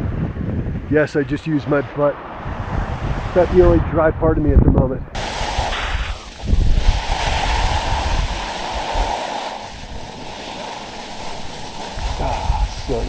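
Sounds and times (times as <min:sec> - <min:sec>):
wind rumbling on microphone: 0:00.0 - 0:13.0
skis sliding through slush: 0:05.2 - 0:13.0.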